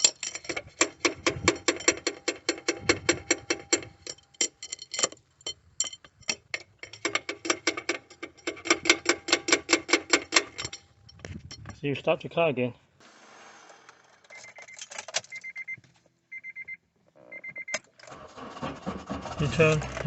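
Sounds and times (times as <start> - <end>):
metal tapping on starter motor: 0.0 - 11.7.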